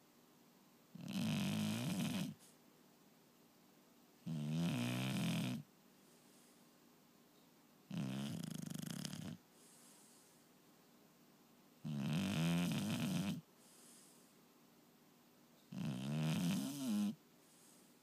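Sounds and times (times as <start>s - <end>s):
soft breath out: 9.5s - 10.5s, 13.6s - 14.4s, 17.4s - 18.0s
person snoring: 15.7s - 17.2s.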